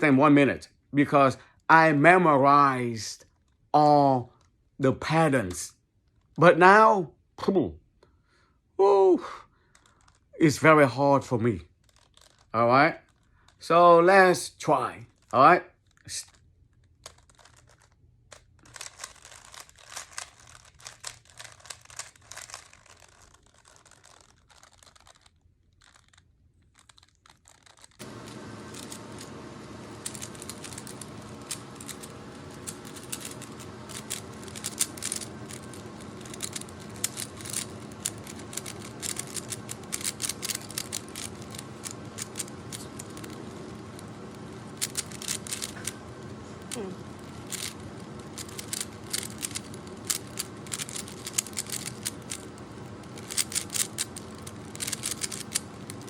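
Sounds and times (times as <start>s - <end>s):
puzzle cube layers clicking: 17.0s - 26.2s, 26.8s - 56.0s
steady background hiss: 28.0s - 56.0s.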